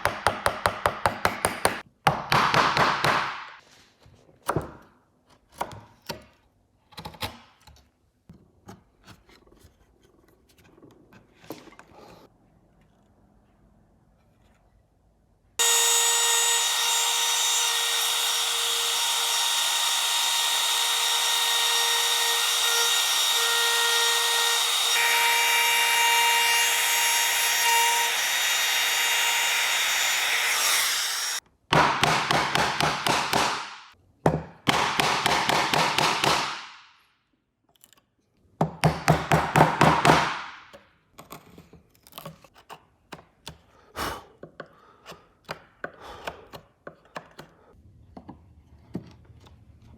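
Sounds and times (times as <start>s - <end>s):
hand saw strokes: 15.6s - 31.4s
power tool cutting wood: 15.6s - 31.4s.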